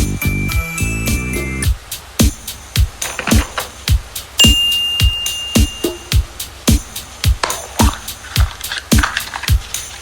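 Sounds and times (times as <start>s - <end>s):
upbeat music with kick drum: 0.0s - 10.0s
bright ringing ding: 4.4s - 6.2s.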